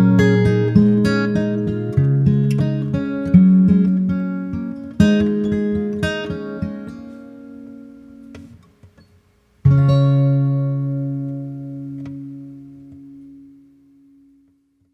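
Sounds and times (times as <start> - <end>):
acoustic guitar picking: 0.0 - 14.6
guitar chord ringing out: 9.6 - 14.4.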